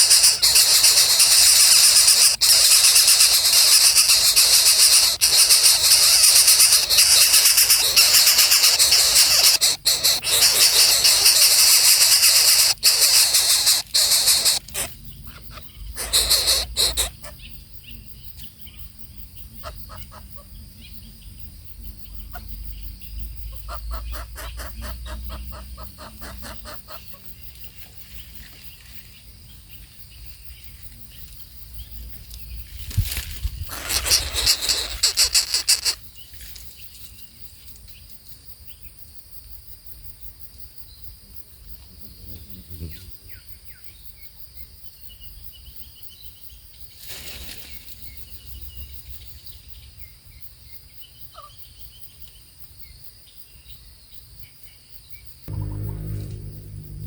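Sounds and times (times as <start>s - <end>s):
bird and fowl calls: 0.0s - 17.5s, 23.5s - 27.3s, 33.7s - 36.0s
faint high hiss: 55.5s - 57.0s.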